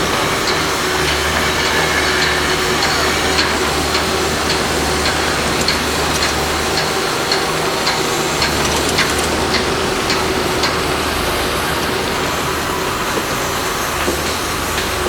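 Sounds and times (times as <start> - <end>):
machinery rumble: 0.0 - 15.0.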